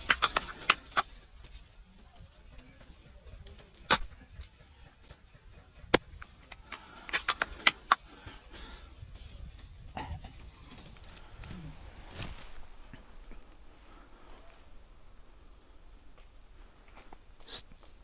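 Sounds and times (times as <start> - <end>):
low outdoor background noise: 0.0 - 18.0
airsoft gun shots: 3.9 - 4.1.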